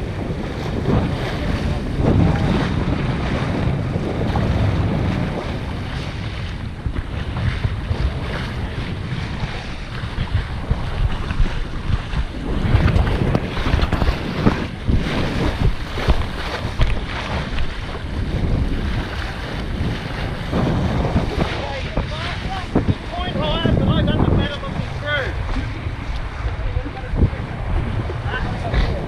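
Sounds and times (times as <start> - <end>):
rushing splashing water: 0.0 - 29.0
wind buffeting microphone: 0.0 - 29.0.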